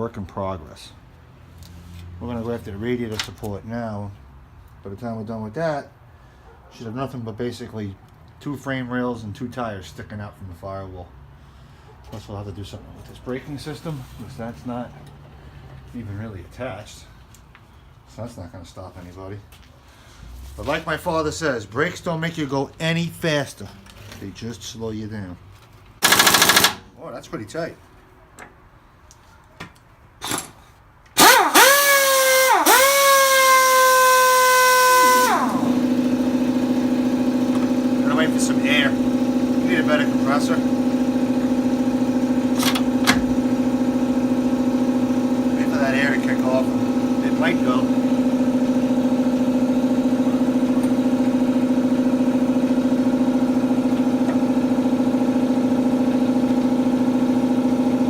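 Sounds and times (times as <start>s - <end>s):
air compressor pulsing hum: 26.0s - 26.8s, 31.2s - 58.0s
impact wrench whine: 26.0s - 26.8s, 30.2s - 58.0s.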